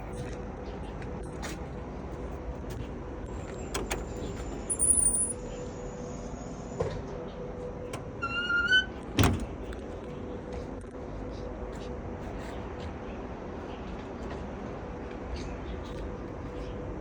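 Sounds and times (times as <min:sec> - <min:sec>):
mechanical hum: 0:00.0 - 0:17.0
short rising squeak: 0:04.2 - 0:05.4, 0:08.0 - 0:09.5.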